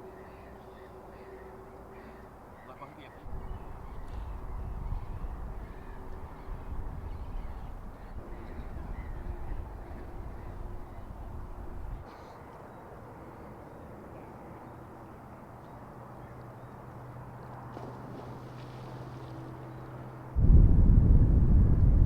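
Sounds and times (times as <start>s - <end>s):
bird calls: 0.0s - 12.6s
steady low hum: 3.3s - 12.3s, 18.2s - 22.0s
low outdoor rumble: 18.0s - 22.0s.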